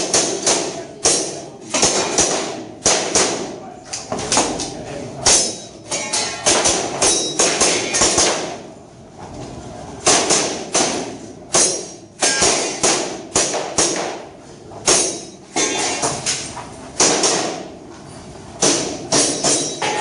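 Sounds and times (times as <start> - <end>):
airsoft pistol shots: 10.1 - 14.3.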